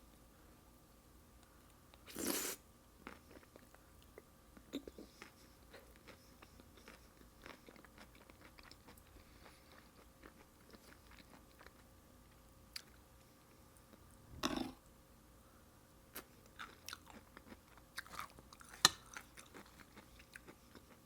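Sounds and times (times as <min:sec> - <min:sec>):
chewing with crunches: 0:03.0 - 0:11.9, 0:16.2 - 0:21.0.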